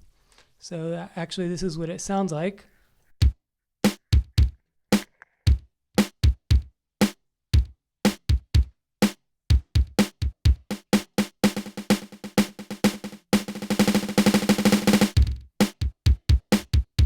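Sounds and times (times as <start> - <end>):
synthesized kick and snare drum: 3.2 - 4.5, 5.5 - 17.0.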